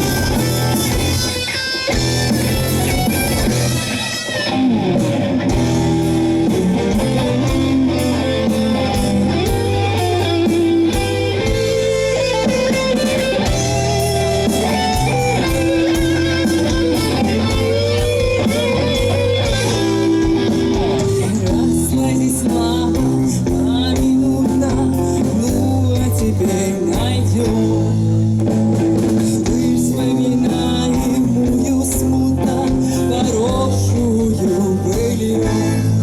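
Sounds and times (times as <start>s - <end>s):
bass guitar: 0.0s - 36.0s
electric guitar lead line: 0.0s - 36.0s
steady drum beat: 0.0s - 36.0s.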